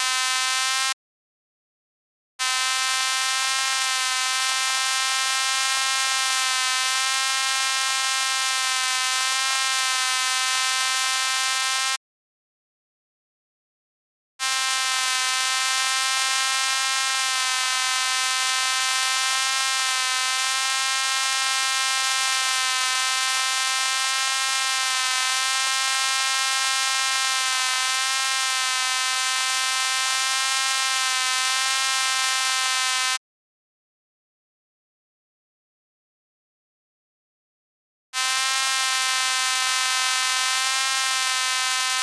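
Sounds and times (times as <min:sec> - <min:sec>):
fly buzzing: 0:00.0 - 0:00.9, 0:27.3 - 0:33.2, 0:38.2 - 0:42.0.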